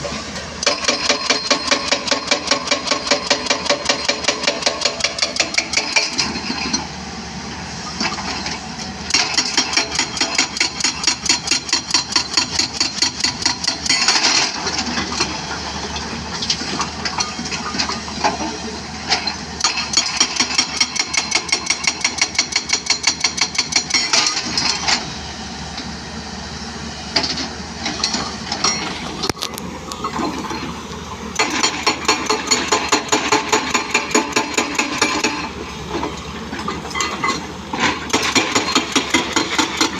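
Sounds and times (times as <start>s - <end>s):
diesel engine running: 0.0s - 39.9s
hydraulic breaker hammering: 31.4s - 35.5s, 36.7s - 39.9s.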